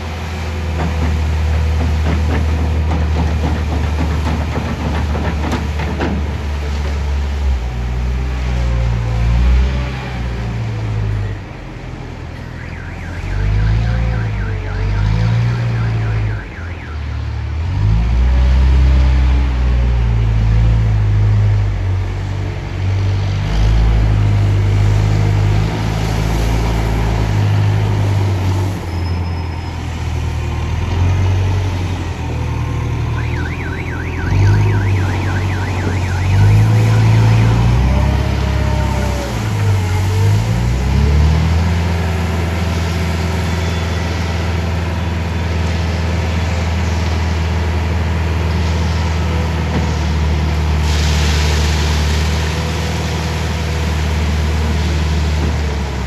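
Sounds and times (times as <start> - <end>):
diesel engine revving: 0.0 - 56.0
high warbling alarm: 33.1 - 37.9.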